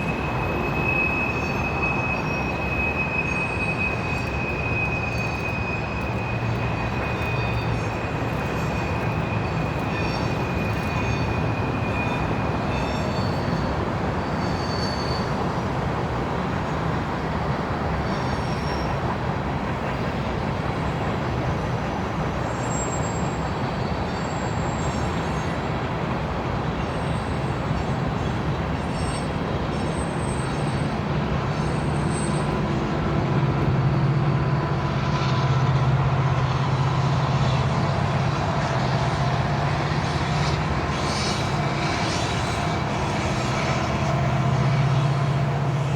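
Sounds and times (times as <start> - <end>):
wheel squeal: 0.0 - 15.7, 18.0 - 19.0, 22.5 - 25.6, 26.8 - 33.0
train wheels rumbling on rails: 0.0 - 45.9.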